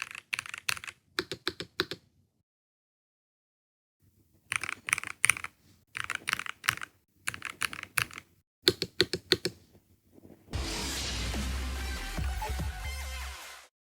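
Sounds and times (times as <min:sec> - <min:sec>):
mechanical keyboard typing: 0:00.0 - 0:02.0, 0:04.5 - 0:09.6.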